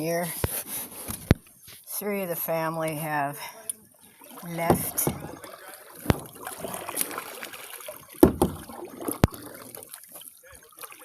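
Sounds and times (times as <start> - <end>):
water splashing off paddle: 4.1 - 11.0
sharp knocks: 4.6 - 5.4, 6.0 - 6.4, 8.2 - 9.4.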